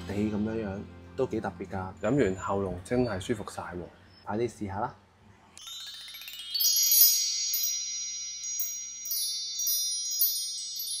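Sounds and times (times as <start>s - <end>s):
chimes ringing: 1.9s - 3.5s, 5.6s - 11.0s.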